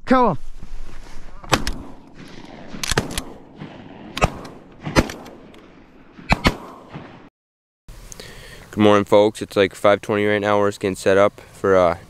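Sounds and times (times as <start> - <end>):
shotgun shots echoing: 1.4 - 7.3.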